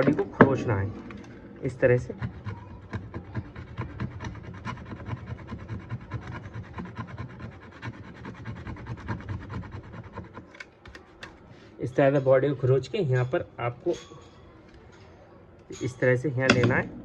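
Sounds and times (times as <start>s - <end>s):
metal scraping: 0.0s - 5.6s.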